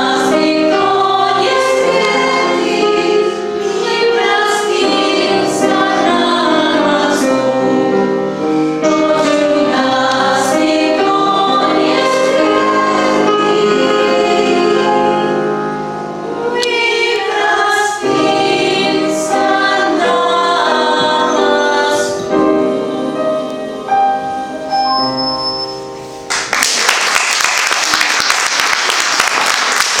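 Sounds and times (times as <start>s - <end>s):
women singing in harmony: 0.0s - 8.2s, 8.8s - 24.3s
applause: 26.3s - 30.0s.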